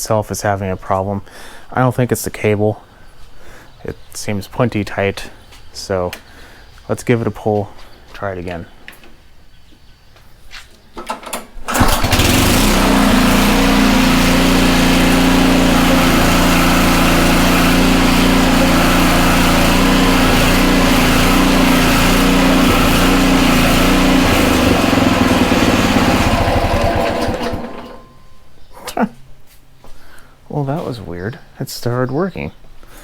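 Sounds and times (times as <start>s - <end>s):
lawn mower engine running: 11.0s - 28.4s.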